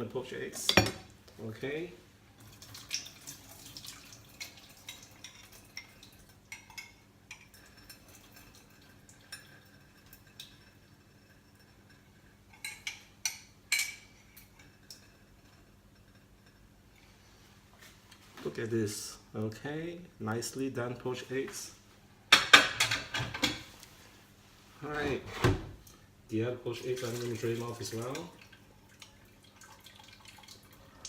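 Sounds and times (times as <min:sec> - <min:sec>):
crockery clinking: 0:00.6 - 0:01.1
water trickling and dripping: 0:02.4 - 0:17.1, 0:26.8 - 0:31.0.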